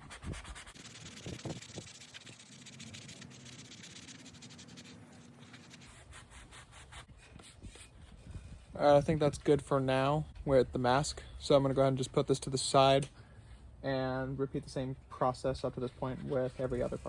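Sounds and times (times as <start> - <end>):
sandpaper scratching: 0.0 - 7.9.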